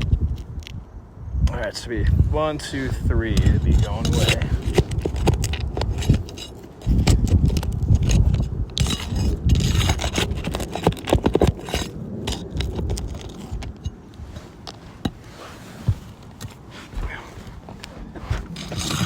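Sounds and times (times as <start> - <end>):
metal tool scraping shingles: 2.6 - 17.0, 18.2 - 19.0.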